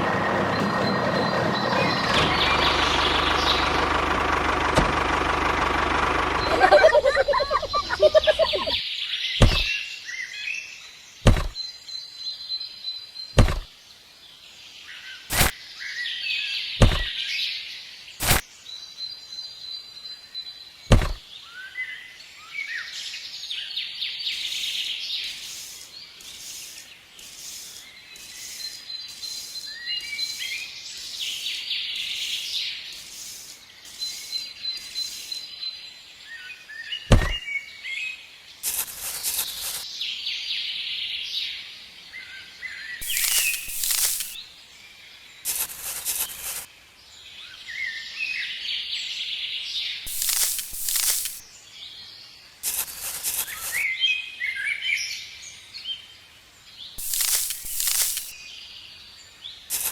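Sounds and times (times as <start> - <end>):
birds chirping: 0.0 - 10.0, 42.9 - 44.4, 50.1 - 51.5, 56.9 - 58.8
sharp single knocks: 9.4 - 9.7, 11.2 - 11.6, 13.4 - 13.7, 16.8 - 17.1, 20.9 - 21.2, 37.1 - 37.4.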